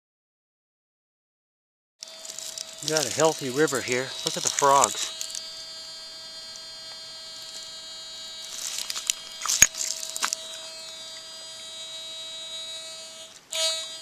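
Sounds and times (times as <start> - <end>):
rustling: 2.0 - 5.5, 8.4 - 11.3
metal detector hum: 2.0 - 14.0
sharp click: 8.5 - 10.4.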